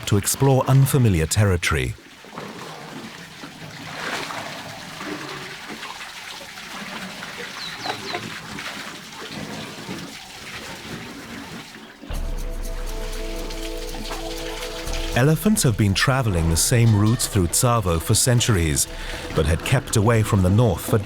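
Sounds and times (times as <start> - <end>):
water splashing and trickling: 0.0 - 21.0.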